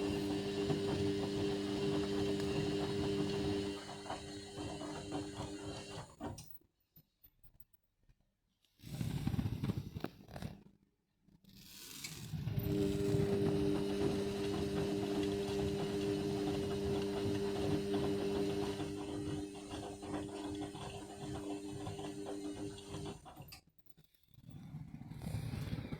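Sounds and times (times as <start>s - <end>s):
washing machine running: 0.0s - 6.4s, 12.4s - 23.5s.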